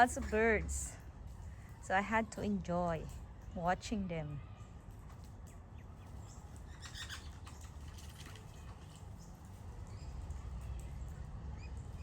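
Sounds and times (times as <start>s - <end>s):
birds tapping and scuffling: 0.0s - 12.0s
faint bird chirps: 5.5s - 7.8s.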